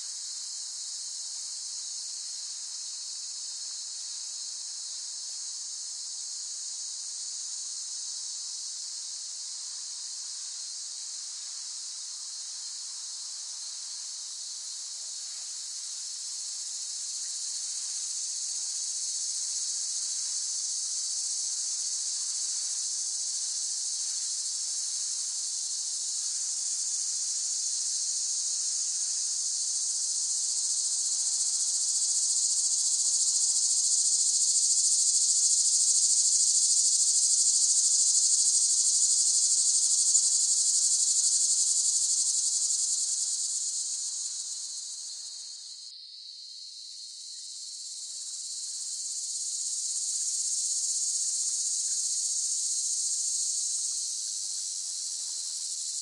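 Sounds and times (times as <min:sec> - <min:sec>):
cicadas buzzing: 0:26.1 - 0:56.0.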